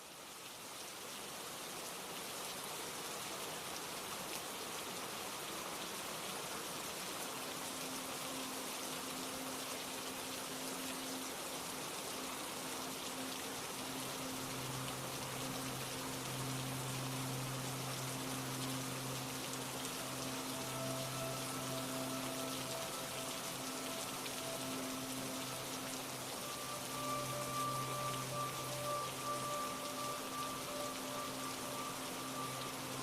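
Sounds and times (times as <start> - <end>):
steady rain: 0.0 - 33.0
low steady tone: 7.4 - 33.0.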